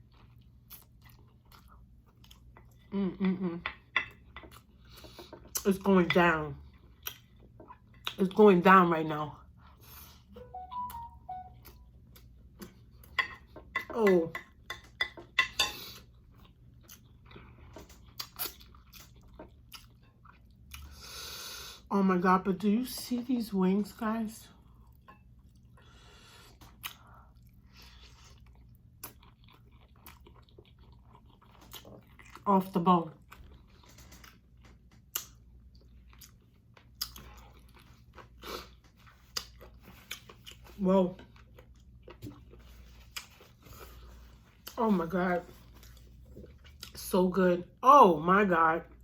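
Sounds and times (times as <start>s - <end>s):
chewing meat: 0.0s - 5.8s, 6.5s - 8.3s, 16.0s - 21.0s, 24.6s - 44.8s.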